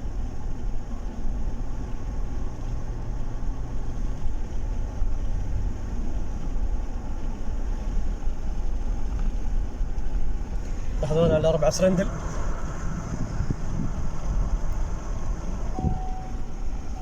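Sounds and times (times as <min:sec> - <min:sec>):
car engine running smoothly: 0:00.0 - 0:17.0
road noise: 0:00.0 - 0:17.0.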